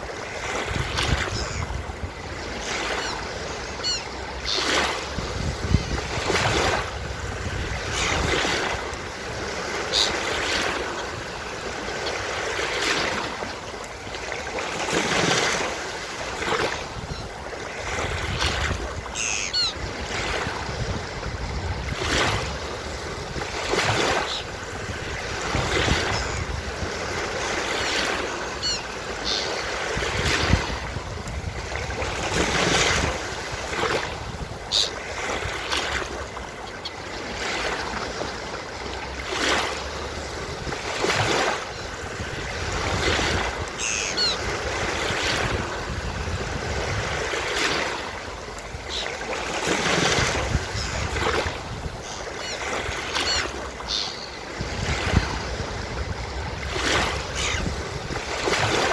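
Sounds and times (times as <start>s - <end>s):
seagulls calling: 1.1s - 5.1s, 9.5s - 10.8s, 18.4s - 20.4s, 23.8s - 30.0s, 34.5s - 35.0s, 41.3s - 45.3s, 48.7s - 49.4s, 50.6s - 55.4s, 57.2s - 57.8s
surf breaking on beach: 4.5s - 13.6s, 14.6s - 36.4s, 39.2s - 58.9s.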